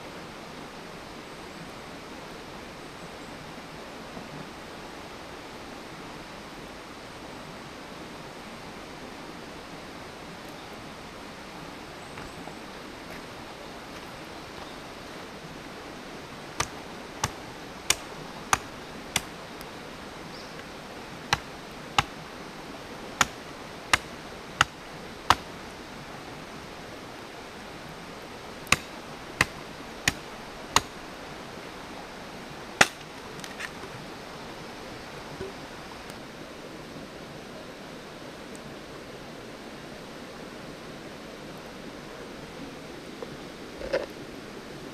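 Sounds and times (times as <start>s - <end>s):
fire hissing: 12.9s - 36.2s
campfire crackling and popping: 15.4s - 26.8s, 28.3s - 31.8s, 32.6s - 34.4s.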